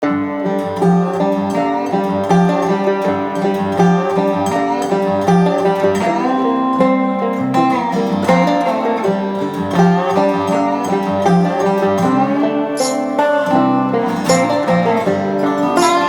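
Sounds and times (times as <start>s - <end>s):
bluegrass banjo and guitar tune: 0.0s - 16.0s.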